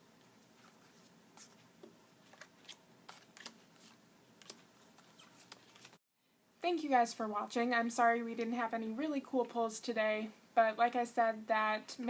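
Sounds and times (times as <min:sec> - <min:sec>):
trading cards clicking and rustling: 0:02.3 - 0:06.0.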